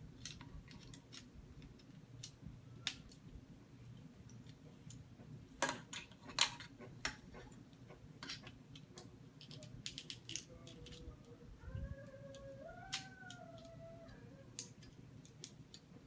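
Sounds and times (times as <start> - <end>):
plastic toy parts clicking: 0.2 - 3.2, 8.2 - 11.1, 12.1 - 13.8, 14.5 - 15.9.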